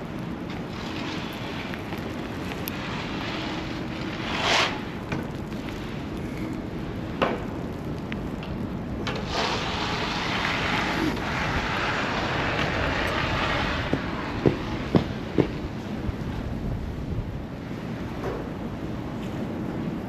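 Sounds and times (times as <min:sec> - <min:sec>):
low rumble of traffic: 0:00.0 - 0:20.0
wind: 0:00.0 - 0:20.0
tyres hissing through slush: 0:00.5 - 0:06.4, 0:09.1 - 0:15.8.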